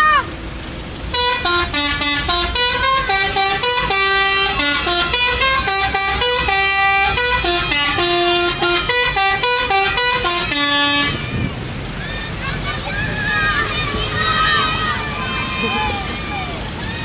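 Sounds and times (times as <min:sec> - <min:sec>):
multi-tone air horn melody: 0:01.1 - 0:11.3.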